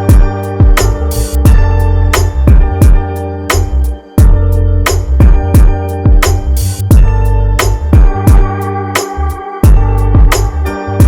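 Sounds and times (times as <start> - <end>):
heavy kick drum: 0.0 - 3.1, 4.2 - 8.6, 9.6 - 10.7
sustained bass and keyboard notes: 0.0 - 11.0.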